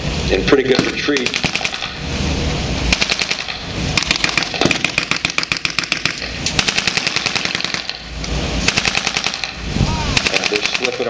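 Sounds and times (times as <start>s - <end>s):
automatic gunfire: 0.8s - 1.9s, 2.9s - 8.0s, 8.7s - 11.0s.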